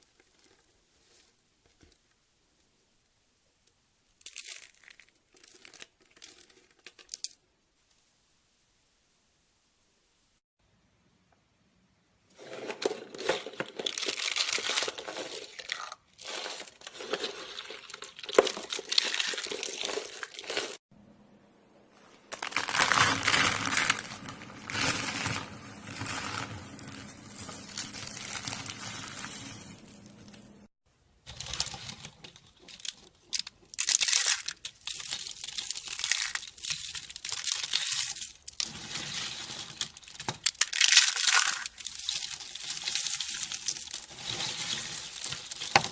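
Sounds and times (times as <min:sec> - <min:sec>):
soap crackling and crunching: 0:04.2 - 0:07.4, 0:12.4 - 0:20.8, 0:22.3 - 0:30.5, 0:31.3 - 0:45.9.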